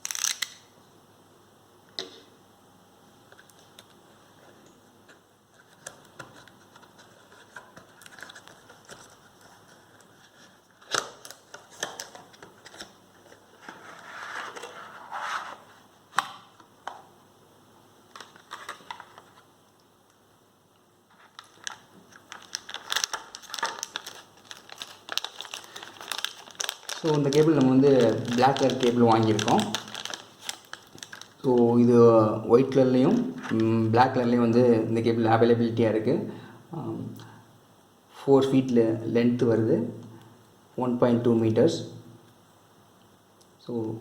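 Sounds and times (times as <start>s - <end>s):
packaging clicks and snaps: 0.0s - 0.6s
plastic and cardboard rustling: 5.5s - 15.9s, 21.1s - 31.8s.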